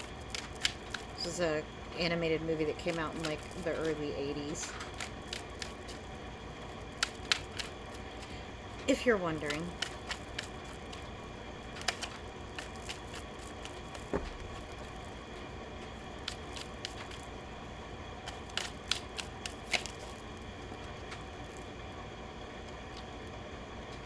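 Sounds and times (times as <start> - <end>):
cards clicking and tapping: 0.0 - 1.4, 2.5 - 17.6, 18.2 - 21.7
soft thump: 14.1 - 14.5.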